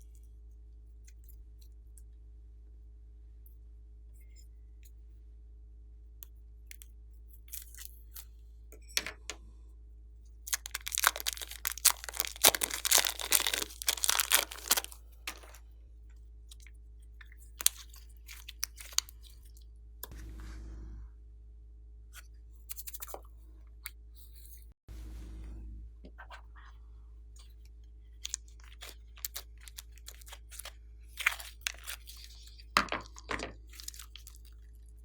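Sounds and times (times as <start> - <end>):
crunchy slime crackling and popping: 10.5 - 15.6, 17.5 - 19.4, 28.2 - 34.9.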